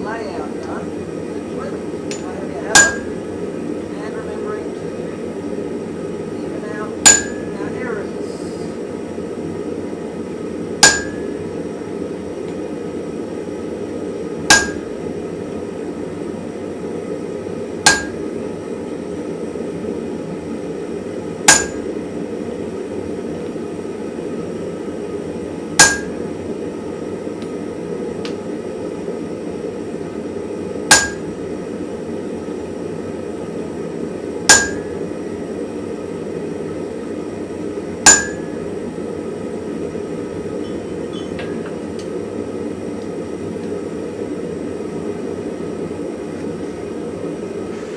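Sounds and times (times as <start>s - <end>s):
hammer blows on hot steel: 2.1s - 3.3s, 7.0s - 7.6s, 10.8s - 11.6s, 14.5s - 15.0s, 17.8s - 18.4s, 21.5s - 22.0s, 25.8s - 26.4s, 30.9s - 31.5s, 34.5s - 35.1s, 38.0s - 38.8s.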